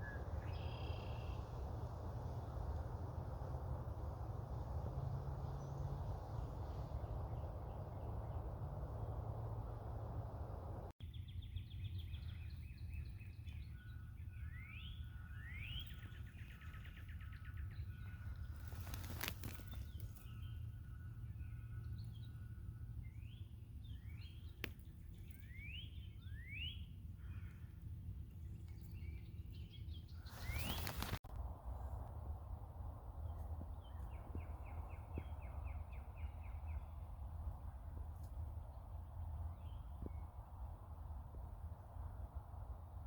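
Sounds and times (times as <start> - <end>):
songbirds calling: 0.0 - 1.9, 5.4 - 31.2
low background rumble: 0.0 - 18.8.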